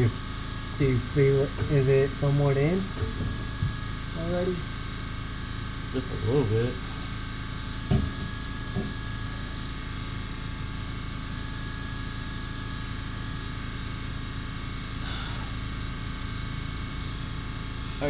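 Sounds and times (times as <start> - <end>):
steady hum and hiss: 0.0 - 18.0
short thump: 3.0 - 3.8, 7.9 - 9.0.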